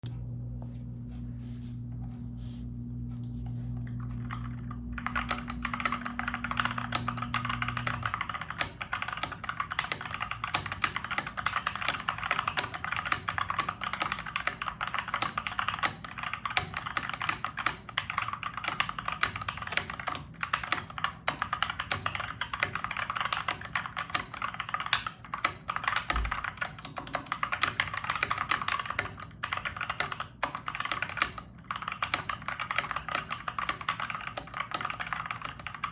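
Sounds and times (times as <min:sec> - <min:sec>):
low steady hum: 0:00.0 - 0:12.2
mechanical keyboard typing: 0:03.3 - 0:35.9.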